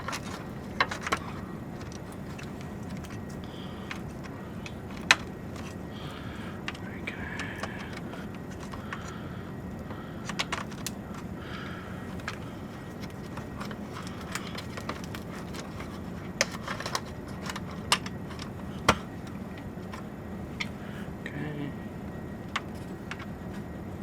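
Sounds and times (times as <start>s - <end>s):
cable connectors clicking: 0.0s - 6.8s, 7.4s - 11.3s, 12.0s - 20.0s
steady low hum: 0.0s - 24.0s.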